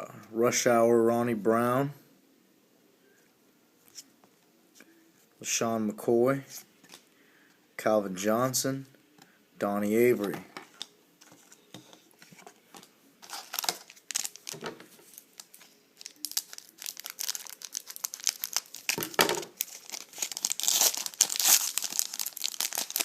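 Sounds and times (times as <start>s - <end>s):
foil wrapper crinkling and tearing: 13.2s - 23.0s.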